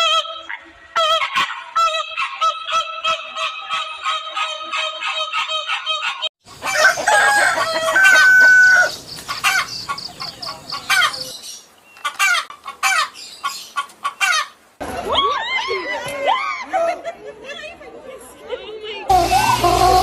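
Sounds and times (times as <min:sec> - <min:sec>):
chickens clucking and squawking: 0:00.0 - 0:16.0, 0:19.1 - 0:20.0
rooster crowing: 0:06.6 - 0:09.0.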